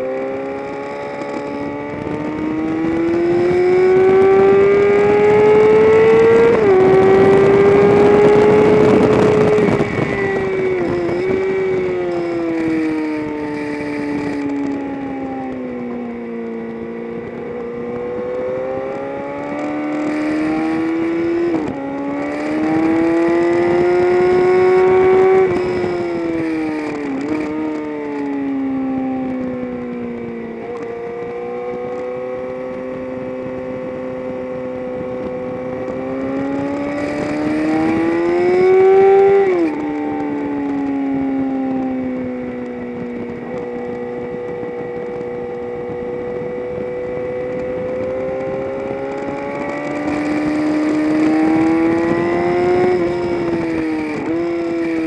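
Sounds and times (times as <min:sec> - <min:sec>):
race car engine revving: 0:00.0 - 0:10.2, 0:17.4 - 0:27.6, 0:34.5 - 0:40.4, 0:44.4 - 0:55.0
wind rush: 0:00.0 - 0:55.0.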